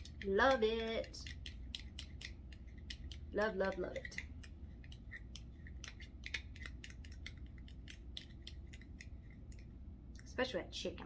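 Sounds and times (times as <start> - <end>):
fork clicking and scraping in bowl: 0.0 - 9.7.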